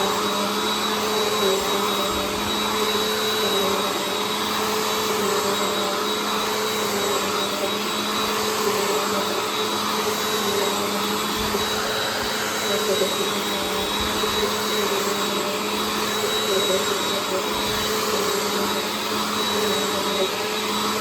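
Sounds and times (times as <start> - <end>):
vacuum cleaner running: 0.0 - 21.0.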